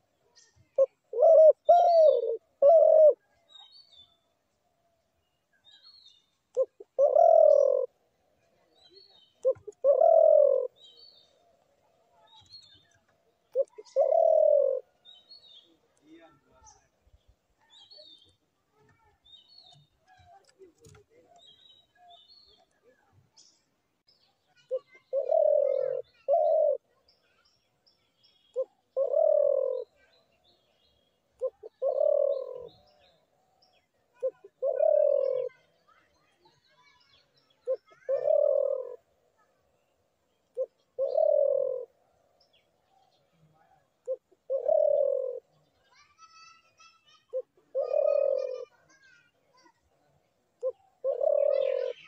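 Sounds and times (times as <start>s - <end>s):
small birds chirping: 0.0s - 52.0s
dove cooing: 0.6s - 3.4s, 6.5s - 15.0s, 24.7s - 27.0s, 28.5s - 30.1s, 31.3s - 33.1s, 34.2s - 35.7s, 37.6s - 39.1s, 40.5s - 42.0s, 43.4s - 45.6s, 47.2s - 48.9s, 50.6s - 52.0s.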